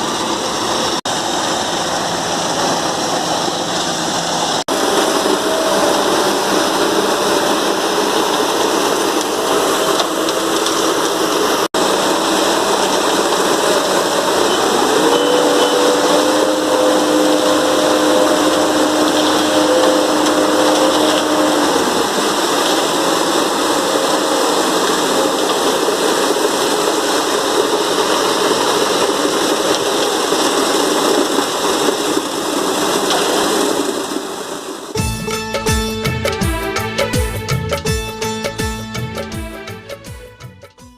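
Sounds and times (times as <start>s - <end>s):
diesel engine running: 0.0s - 30.2s
steady whine: 0.0s - 30.3s.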